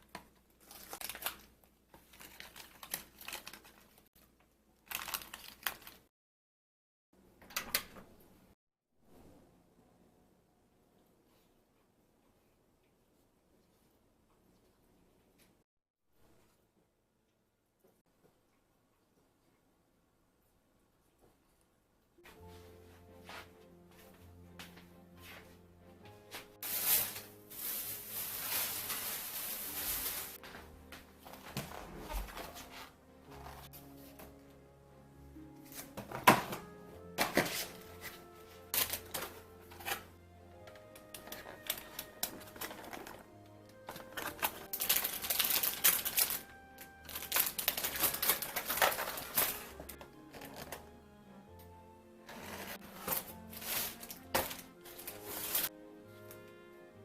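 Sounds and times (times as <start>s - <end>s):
plastic packaging crinkling: 0.1s - 4.1s, 4.8s - 6.1s, 26.6s - 30.4s, 37.2s - 40.1s, 40.8s - 50.8s, 52.3s - 55.7s
soft background music: 22.2s - 57.0s.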